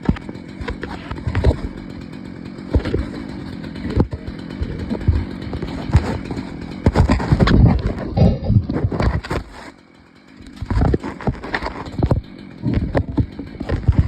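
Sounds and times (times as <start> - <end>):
chainsaw engine running: 0.0 - 14.0
sharp knocks: 2.7 - 9.6.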